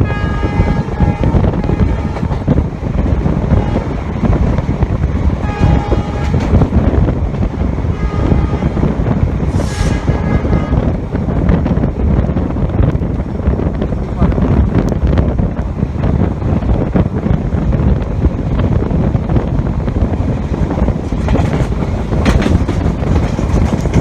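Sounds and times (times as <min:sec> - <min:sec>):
locomotive horn blasts: 0:00.0 - 0:02.4, 0:03.5 - 0:04.0, 0:05.4 - 0:06.6, 0:07.9 - 0:08.9, 0:09.6 - 0:10.9
train rumble and wind: 0:00.0 - 0:24.0.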